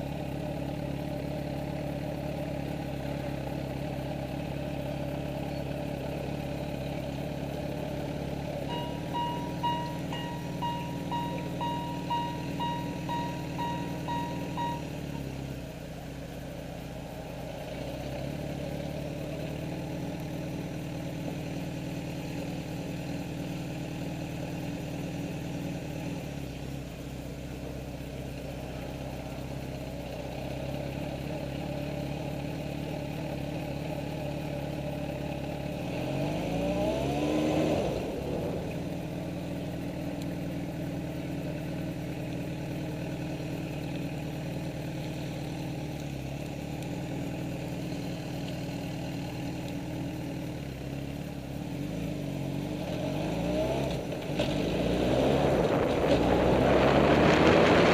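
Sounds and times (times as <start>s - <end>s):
motorcycle engine idling and revving: 0.0s - 57.9s
electronic beeping: 8.7s - 15.3s.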